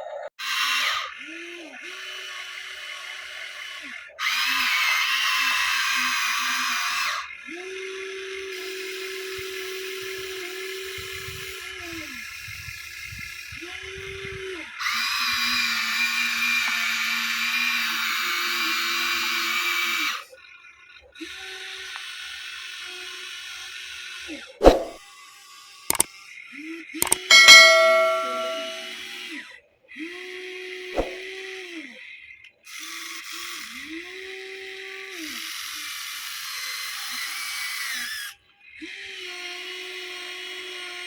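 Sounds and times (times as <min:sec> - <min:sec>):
sharp knock: 0:27.0 - 0:28.9.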